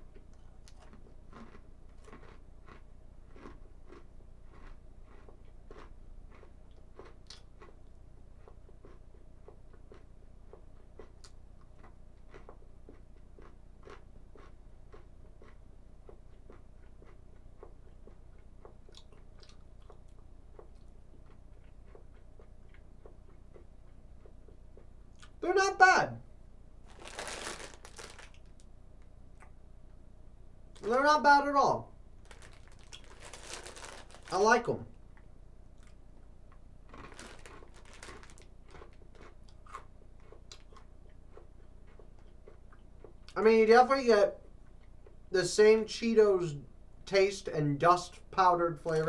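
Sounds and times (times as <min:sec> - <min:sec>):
person chewing crunchy snacks: 0:00.1 - 0:25.6, 0:26.8 - 0:28.7, 0:30.8 - 0:31.0, 0:32.2 - 0:34.8, 0:36.8 - 0:43.4.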